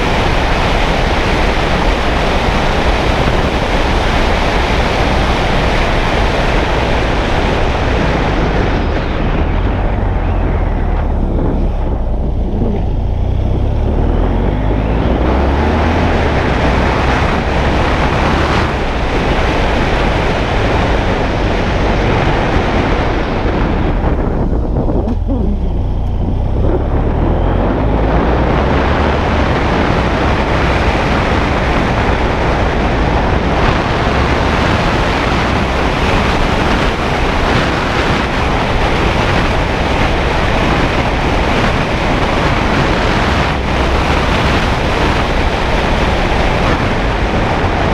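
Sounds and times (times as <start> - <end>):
motorcycle engine running: 0.0 - 47.9
wind noise on microphone: 0.0 - 47.9.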